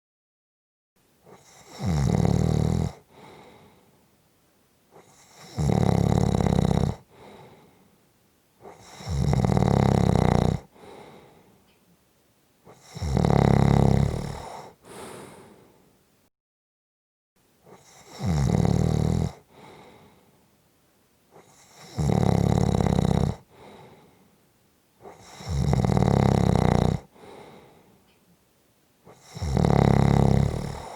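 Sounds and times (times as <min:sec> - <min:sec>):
person snoring: 0:01.3 - 0:03.8, 0:05.0 - 0:07.8, 0:08.6 - 0:11.5, 0:12.7 - 0:15.8, 0:17.7 - 0:20.2, 0:21.4 - 0:24.2, 0:25.0 - 0:27.8, 0:29.1 - 0:30.9
soft breath: 0:03.0 - 0:04.1, 0:07.0 - 0:08.0, 0:10.6 - 0:11.8, 0:14.3 - 0:16.0, 0:19.4 - 0:20.6, 0:23.4 - 0:24.4, 0:27.1 - 0:28.2.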